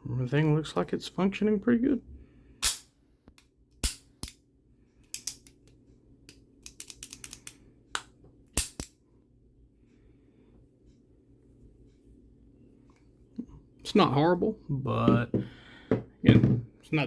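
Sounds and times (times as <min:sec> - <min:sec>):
pistol action clicking: 0:05.0 - 0:09.0.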